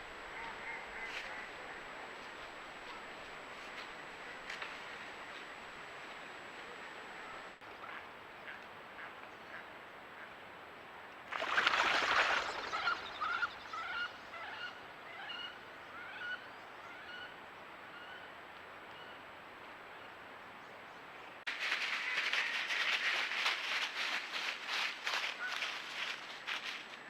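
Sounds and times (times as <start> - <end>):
geese honking: 11.4 - 16.4.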